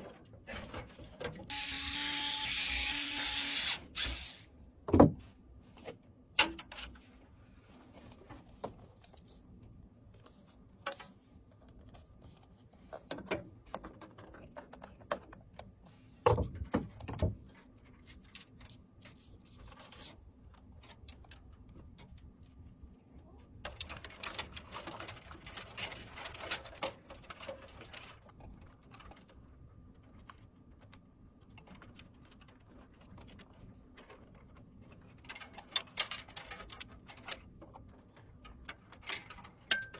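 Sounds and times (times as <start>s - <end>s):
computer parts clicking and knocking: 34.0s - 39.9s.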